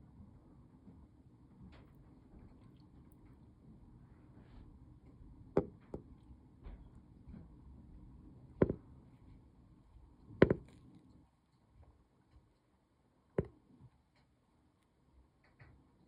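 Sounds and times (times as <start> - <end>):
faint steady background hum: 0.0 - 16.0
sharp short knocks: 8.6 - 8.8, 10.4 - 10.7.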